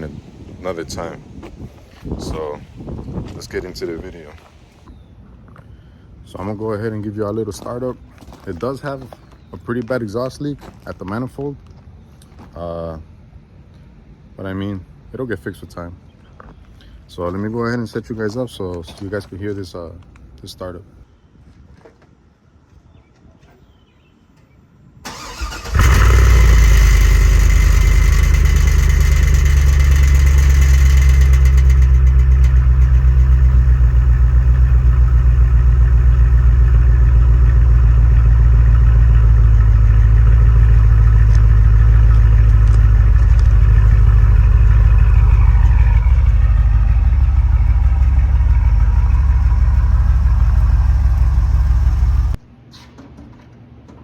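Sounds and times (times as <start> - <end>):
engine cranking and starting: 25.1 - 52.4
engine idling roughly: 25.1 - 52.4.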